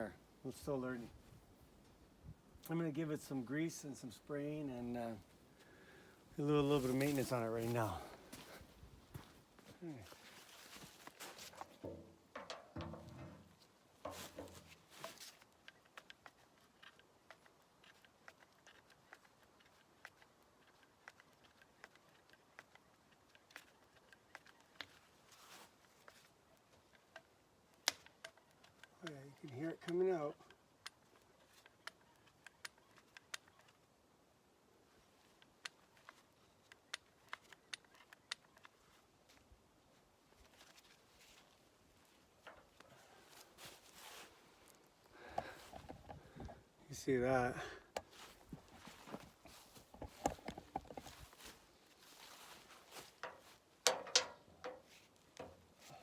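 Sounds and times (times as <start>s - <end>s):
grease fitting clicks and pops: 11.6s - 13.5s, 53.2s - 55.7s
faint small clicks: 35.4s - 39.4s.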